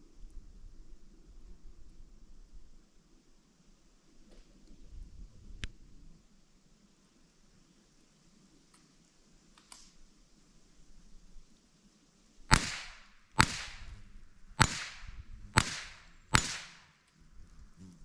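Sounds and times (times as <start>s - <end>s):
faint clicks: 8.6s - 10.0s
rifle shots: 12.5s - 17.0s.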